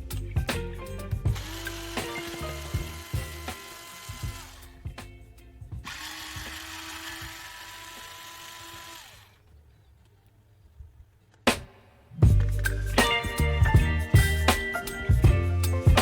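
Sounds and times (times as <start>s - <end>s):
small electric motor whirring: 1.4s - 4.8s, 5.8s - 9.5s.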